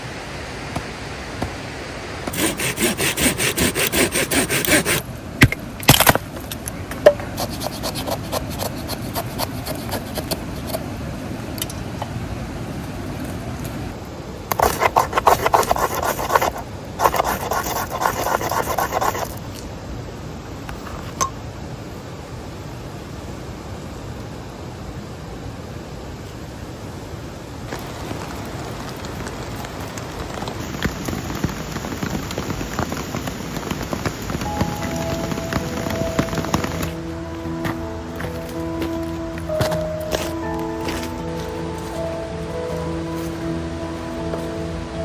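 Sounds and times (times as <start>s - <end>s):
stream water rushing: 0.0s - 45.0s
hand saw cutting wood: 2.3s - 5.0s, 7.4s - 10.7s, 14.5s - 19.4s.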